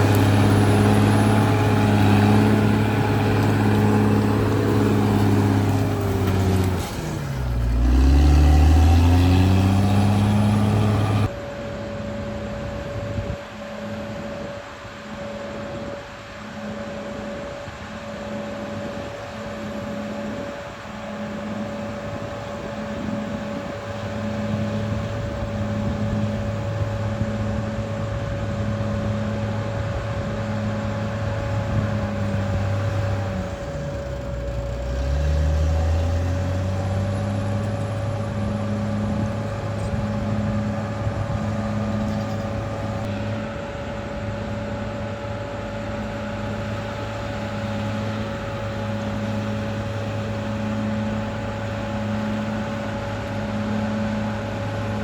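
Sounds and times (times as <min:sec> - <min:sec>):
bulldozer diesel engine under load: 0:00.0 - 0:11.4, 0:18.2 - 0:55.0.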